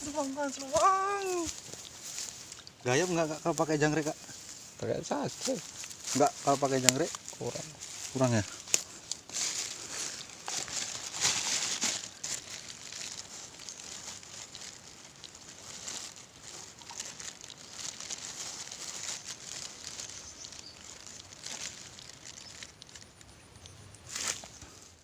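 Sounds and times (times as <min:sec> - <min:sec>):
steady high hiss: 0:00.0 - 0:16.9
rustling and handling noises: 0:00.0 - 0:25.0.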